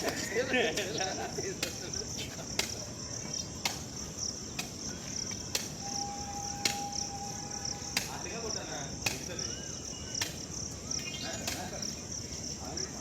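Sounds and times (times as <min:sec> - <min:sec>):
crickets chirping: 0:00.0 - 0:13.0.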